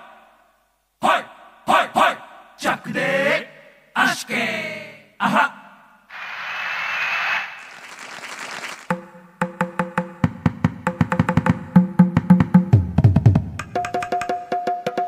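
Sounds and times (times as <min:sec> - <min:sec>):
hissing effect: 0:06.1 - 0:08.9.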